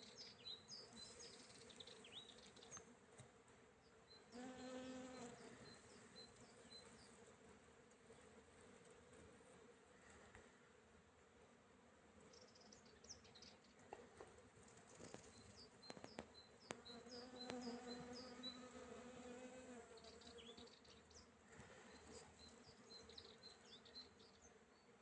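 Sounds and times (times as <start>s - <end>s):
honeybees buzzing: 4.3s - 8.4s, 16.1s - 20.6s.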